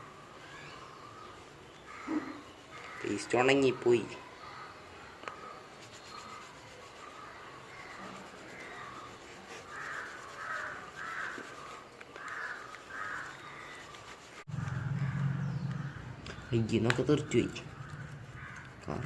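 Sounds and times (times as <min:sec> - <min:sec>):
crow cawing: 0:01.9 - 0:04.8, 0:09.7 - 0:13.9, 0:17.5 - 0:19.0
low hum: 0:14.5 - 0:16.6.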